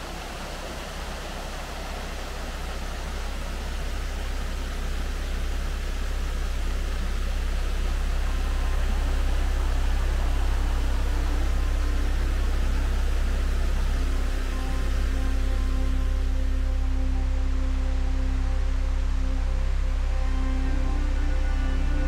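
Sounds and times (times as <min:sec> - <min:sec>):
waterfall rushing: 0:00.0 - 0:16.6.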